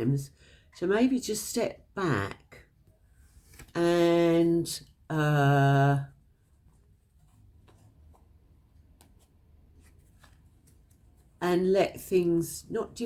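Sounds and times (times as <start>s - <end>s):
woman speaking: 0.0s - 2.7s, 3.8s - 6.2s, 11.4s - 13.0s.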